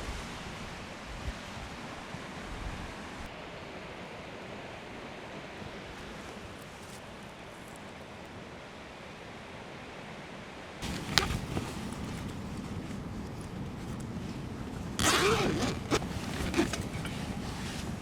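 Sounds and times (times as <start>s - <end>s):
close rustling handling noise: 5.9s - 8.3s, 10.8s - 18.0s.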